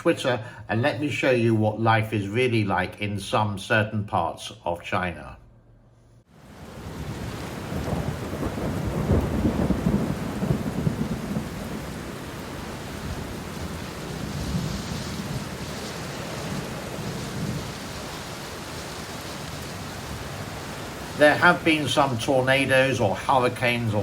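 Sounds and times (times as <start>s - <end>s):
steady rain hissing: 6.2s - 24.0s
thunder rumbling: 6.5s - 24.0s.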